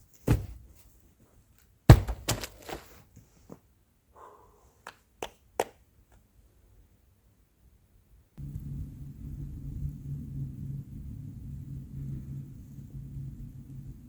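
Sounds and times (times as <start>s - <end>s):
sharp knocks and thuds: 0.2s - 0.8s, 1.9s - 2.9s.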